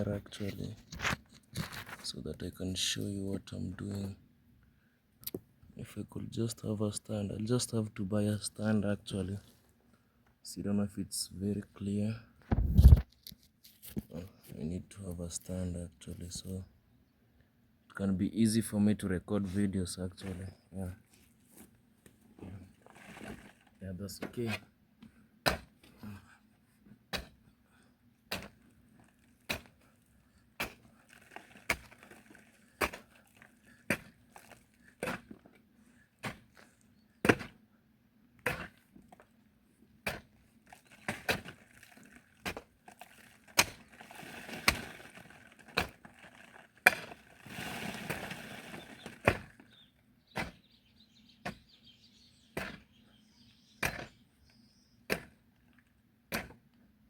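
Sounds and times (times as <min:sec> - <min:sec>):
digging tool striking hard soil: 0:25.4 - 0:25.8, 0:27.1 - 0:27.4, 0:28.3 - 0:28.6, 0:29.4 - 0:29.9, 0:30.5 - 0:33.2, 0:33.8 - 0:35.4, 0:36.2 - 0:36.6, 0:37.2 - 0:37.6, 0:38.4 - 0:38.9, 0:40.0 - 0:40.4, 0:41.0 - 0:41.7, 0:42.4 - 0:49.7, 0:50.3 - 0:50.7, 0:52.5 - 0:52.9, 0:53.8 - 0:54.2, 0:55.1 - 0:55.4, 0:56.3 - 0:56.6.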